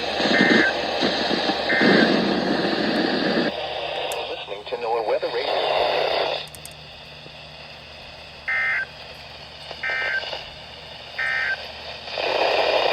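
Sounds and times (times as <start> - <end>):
low radio hiss: 0.0 - 12.9
digital data tone bursts: 0.3 - 0.8, 1.6 - 2.2, 8.5 - 8.9, 9.8 - 10.3, 11.2 - 11.6.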